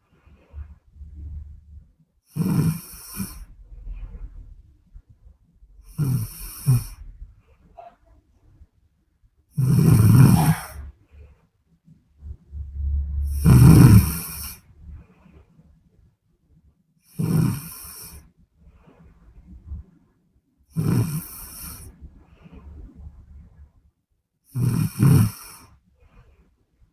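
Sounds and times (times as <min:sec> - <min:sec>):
woman snoring: 0:02.3 - 0:03.5, 0:05.8 - 0:07.0, 0:09.6 - 0:10.8, 0:13.2 - 0:14.6, 0:17.1 - 0:18.2, 0:20.7 - 0:21.9, 0:24.5 - 0:25.7.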